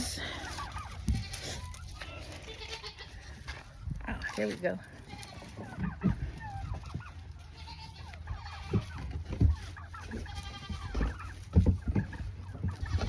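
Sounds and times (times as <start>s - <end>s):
goats bleating: 1.1s - 3.4s, 4.2s - 5.8s, 7.4s - 9.0s, 10.0s - 11.3s.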